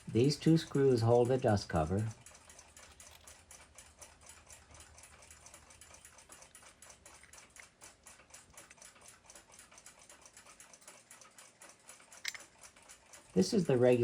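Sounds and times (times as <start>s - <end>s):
clock ticking: 0.0s - 14.0s.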